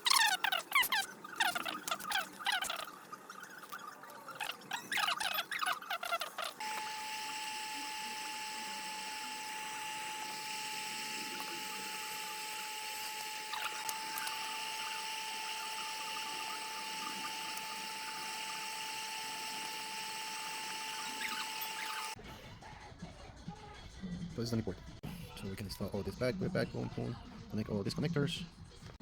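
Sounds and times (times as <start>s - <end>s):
electric motor whine: 4.8s - 22.2s.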